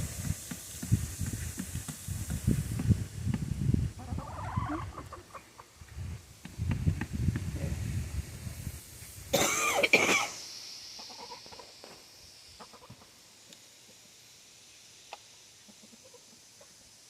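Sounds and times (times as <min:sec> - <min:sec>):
hen rough cough-like burst: 0:09.2 - 0:10.6.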